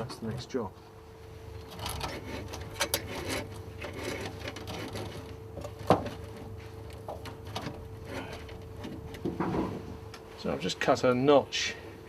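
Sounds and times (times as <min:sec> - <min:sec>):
cables rustling and scraping: 0:01.3 - 0:10.5.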